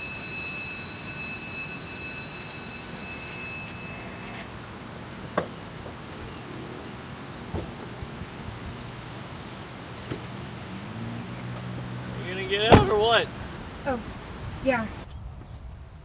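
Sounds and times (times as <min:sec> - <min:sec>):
outdoor background rumble: 0:02.8 - 0:16.0
small birds chirping: 0:03.7 - 0:15.8
soft knocks: 0:05.3 - 0:13.6.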